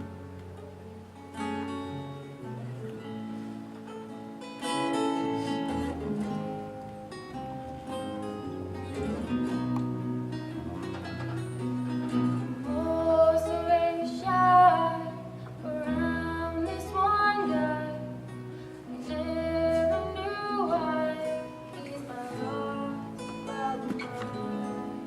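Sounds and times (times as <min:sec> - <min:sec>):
acoustic guitar: 0:00.0 - 0:25.0
woman singing: 0:12.6 - 0:25.0.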